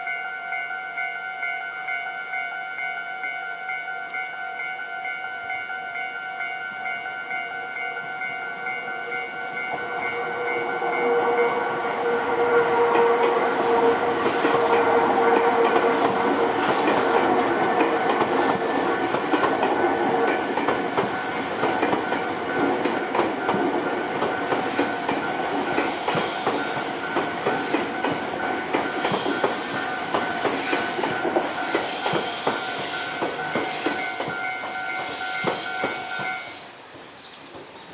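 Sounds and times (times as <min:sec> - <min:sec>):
level crossing warning bell: 0:00.0 - 0:36.7
train wheels clattering over rail joints: 0:12.4 - 0:36.5.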